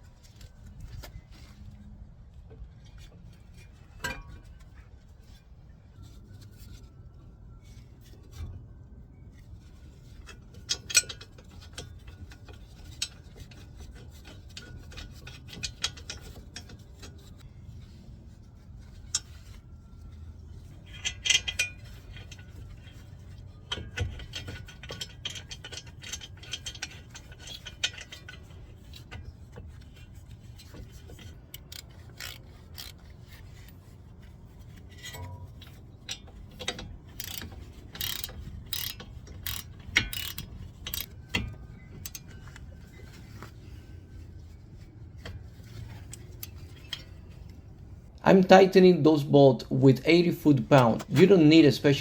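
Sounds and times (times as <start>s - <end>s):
metal scraping and rubbing: 9.6s - 48.1s
metal parts clinking: 10.0s - 17.9s, 18.8s - 33.9s, 34.5s - 47.6s.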